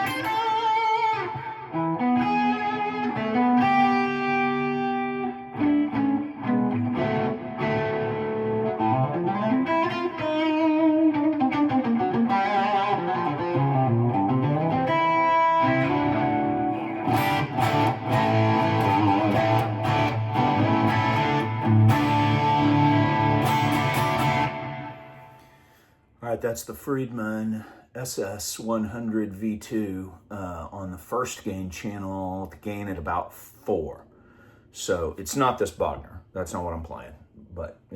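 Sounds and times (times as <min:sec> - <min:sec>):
electric guitar crunch tone: 0:00.0 - 0:25.7
guitar lead lines with bends: 0:00.0 - 0:25.7
strummed guitar chords: 0:00.0 - 0:25.7.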